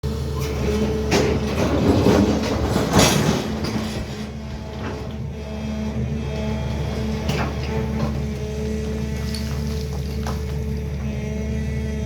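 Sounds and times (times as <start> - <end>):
excavator diesel engine humming: 0.0 - 12.0
clattering rushing noise: 0.6 - 5.2.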